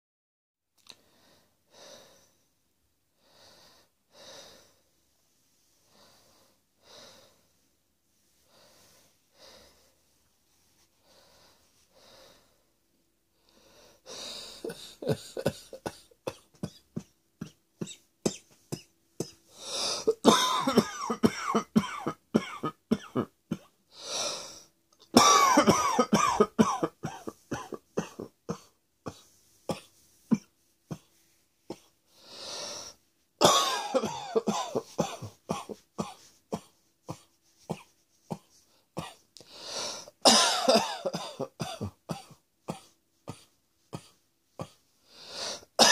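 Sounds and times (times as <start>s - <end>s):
person coughing: 14.6s - 23.8s, 25.1s - 31.1s, 33.4s - 39.2s, 40.2s - 44.8s, 45.5s - 45.9s.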